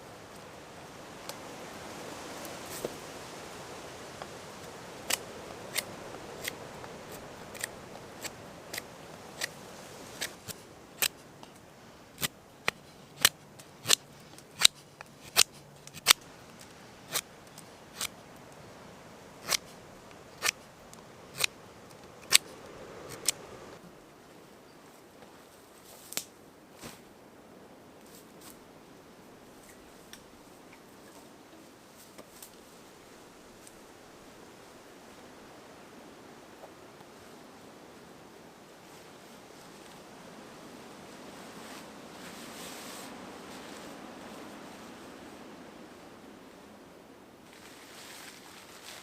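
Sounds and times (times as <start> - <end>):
faint hiss: 0.0 - 49.0
sharp clicks or snips: 14.6 - 16.2.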